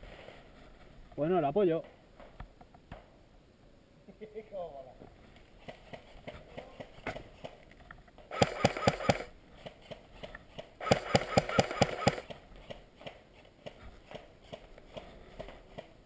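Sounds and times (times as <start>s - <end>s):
airsoft rifle full-auto bursts: 8.3s - 9.4s, 10.8s - 12.3s.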